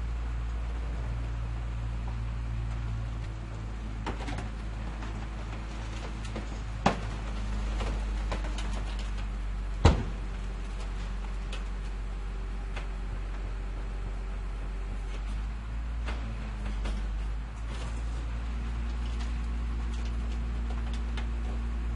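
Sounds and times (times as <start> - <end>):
truck engine idling: 0.0 - 21.9.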